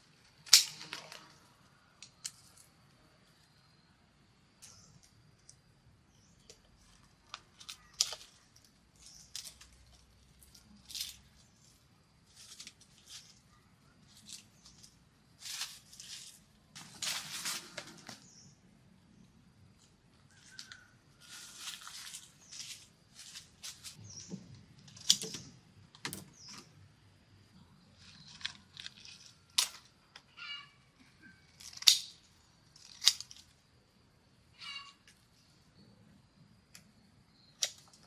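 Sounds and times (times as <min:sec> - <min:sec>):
plant material rustling and snapping: 0:06.5 - 0:13.4, 0:31.6 - 0:33.5.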